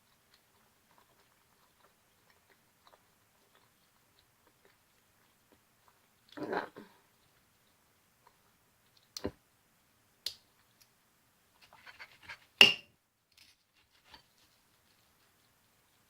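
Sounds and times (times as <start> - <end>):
soft crackling: 13.3 - 16.0.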